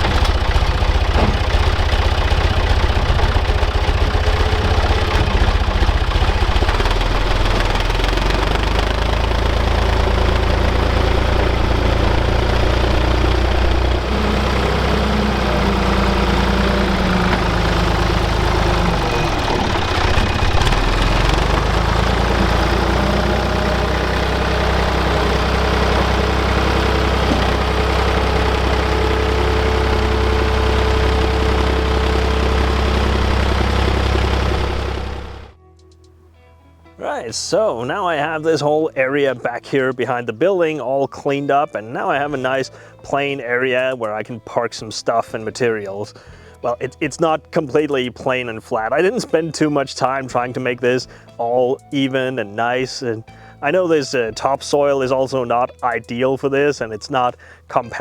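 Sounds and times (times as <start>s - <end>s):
work machine engine running: 0.0s - 35.6s.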